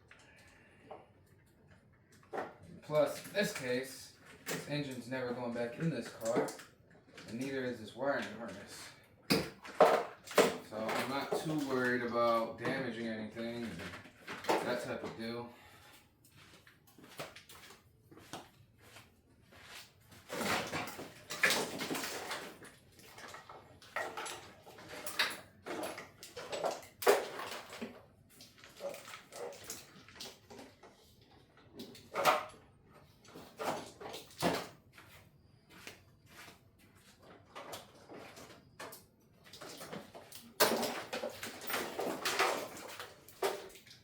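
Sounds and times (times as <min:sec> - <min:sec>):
wires scraping and rustling: 0:09.6 - 0:15.5.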